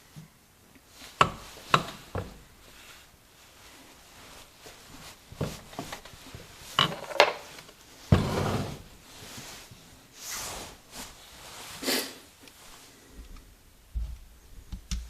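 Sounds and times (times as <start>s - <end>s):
metal parts clinking and knocking: 6.8s - 7.4s
heavy thump: 8.1s - 8.9s.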